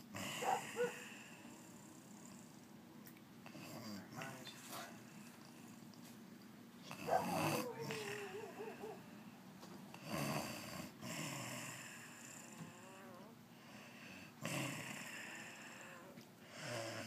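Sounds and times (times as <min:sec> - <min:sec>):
woman snoring: 0:10.0 - 0:17.0.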